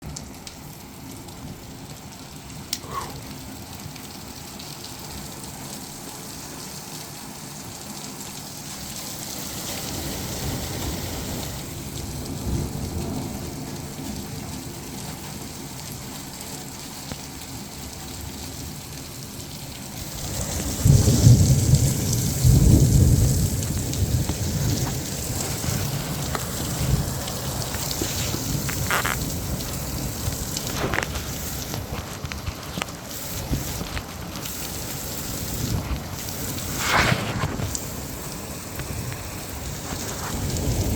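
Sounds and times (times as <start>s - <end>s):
rain pattering: 0.0s - 40.9s
rolling thunder rumble: 9.6s - 15.1s, 20.0s - 40.9s.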